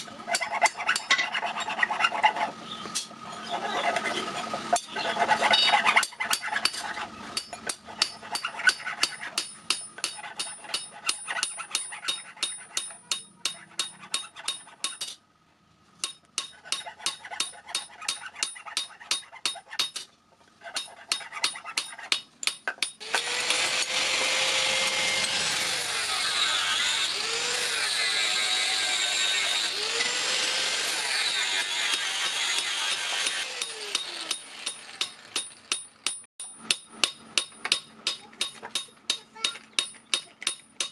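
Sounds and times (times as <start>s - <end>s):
power grinder grinding steel: 23.0s - 35.7s.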